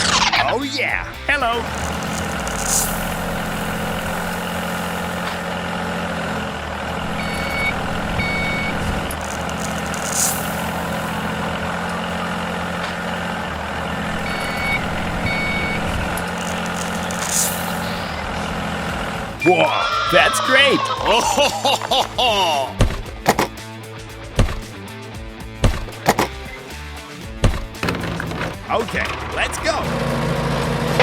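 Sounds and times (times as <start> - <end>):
heavy vehicle engine running: 0.0 - 31.0
short air hisses: 2.2 - 5.0, 9.2 - 11.3
reversing beeper beeps: 6.9 - 12.6, 13.9 - 18.5, 19.4 - 20.8.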